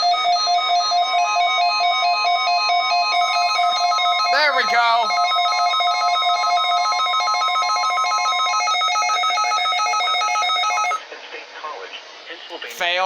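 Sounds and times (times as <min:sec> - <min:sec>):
steady alarm tone: 0:00.0 - 0:11.0
electronic alert beeps: 0:00.7 - 0:11.0.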